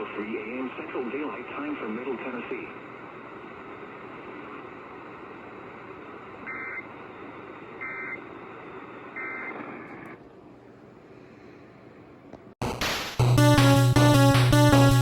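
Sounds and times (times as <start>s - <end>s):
radio hiss: 0.0s - 10.0s.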